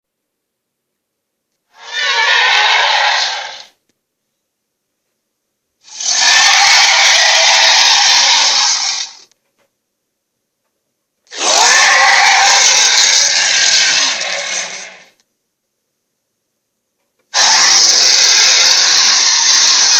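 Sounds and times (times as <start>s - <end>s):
rasping dragon roar: 1.8s - 3.8s, 5.9s - 9.2s, 11.3s - 15.2s, 17.4s - 19.9s.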